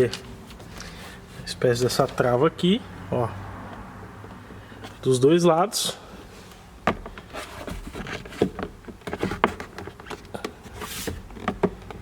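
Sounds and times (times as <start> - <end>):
plastic glove box clicks and knocks: 6.8 - 7.3, 8.0 - 12.0.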